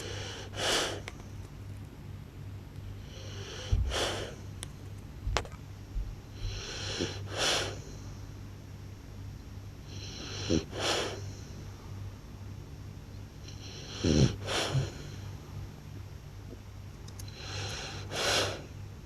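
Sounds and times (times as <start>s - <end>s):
dog snoring loudly: 0.0s - 1.0s, 3.0s - 4.4s, 6.4s - 7.9s, 9.9s - 11.3s, 13.4s - 15.2s, 17.3s - 18.7s.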